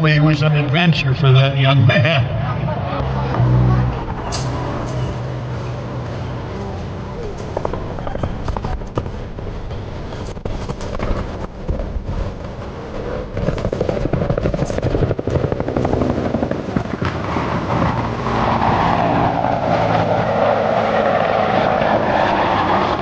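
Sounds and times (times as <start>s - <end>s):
helicopter flying: 0.0s - 23.0s
rotor beating rapidly: 10.4s - 20.2s.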